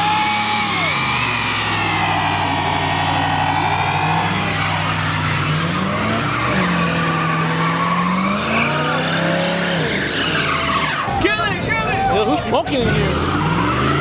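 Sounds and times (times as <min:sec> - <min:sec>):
car engine revving: 0:00.0 - 0:11.1, 0:12.6 - 0:14.0
tyres squealing: 0:00.0 - 0:11.2.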